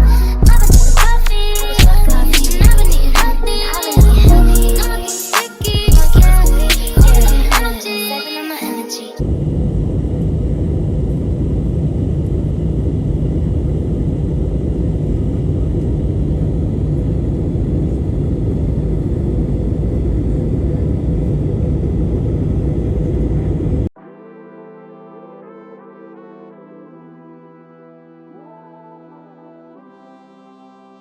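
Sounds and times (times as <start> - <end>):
airplane engine rumble: 9.2 - 23.9.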